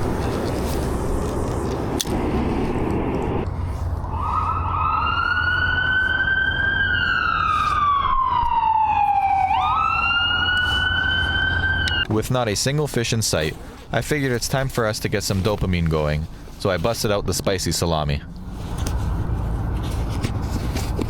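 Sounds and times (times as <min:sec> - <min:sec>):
low rumble: 0:00.0 - 0:08.4
siren wailing: 0:02.1 - 0:12.1.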